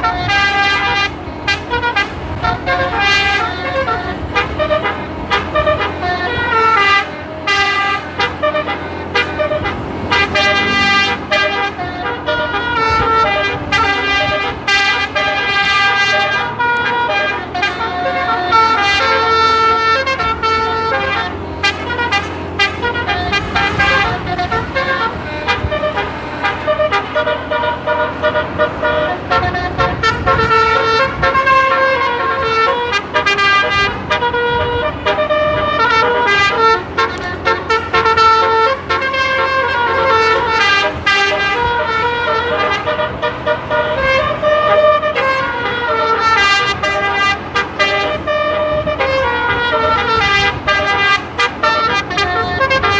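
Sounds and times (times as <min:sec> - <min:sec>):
musical air horn melody: 0:00.0 - 0:52.9
low rumble: 0:03.6 - 0:15.5.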